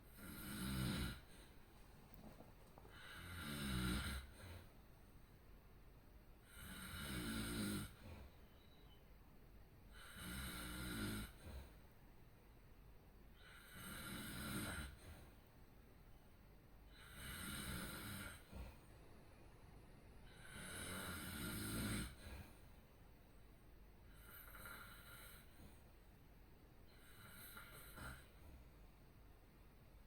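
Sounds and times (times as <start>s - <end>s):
person snoring: 0.1s - 1.3s, 2.9s - 4.4s, 6.4s - 8.0s, 16.9s - 18.5s, 20.3s - 22.2s.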